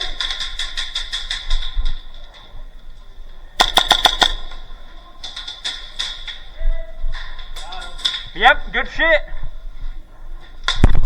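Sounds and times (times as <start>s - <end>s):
airsoft guns firing: 3.6s - 4.8s.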